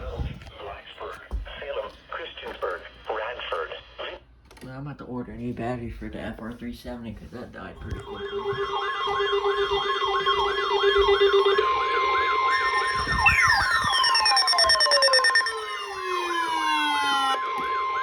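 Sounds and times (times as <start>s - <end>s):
warbling siren: 7.9s - 18.0s
steady alert tone: 8.0s - 17.4s
tone sliding down in pitch: 8.0s - 18.0s.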